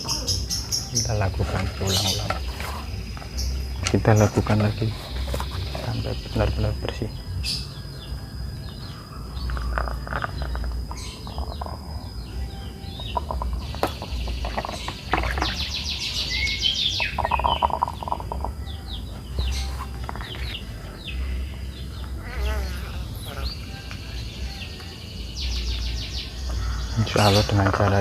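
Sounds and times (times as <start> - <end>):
birds chirping and calling: 0.0 - 28.0
faint steady high tone: 11.9 - 13.7
bird rattling trill: 13.0 - 18.8.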